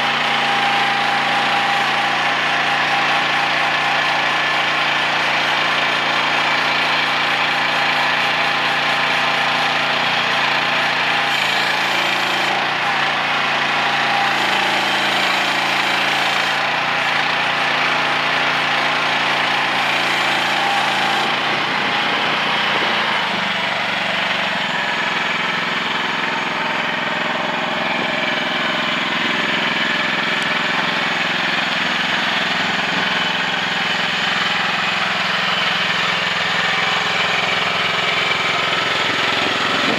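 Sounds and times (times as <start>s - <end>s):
excavator engine running: 0.0s - 39.9s.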